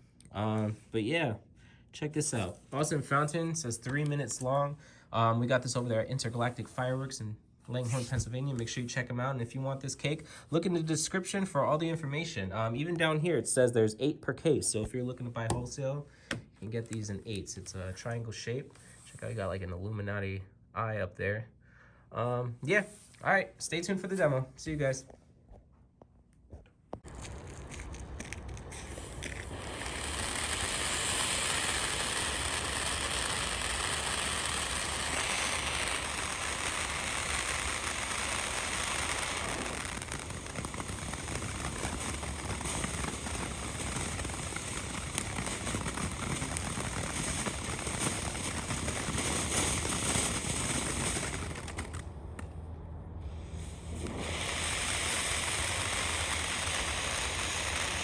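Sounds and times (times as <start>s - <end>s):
firework fountain hissing and crackling: 2.2s - 4.5s, 5.5s - 7.1s, 7.8s - 8.9s, 27.0s - 52.5s, 53.2s - 58.0s.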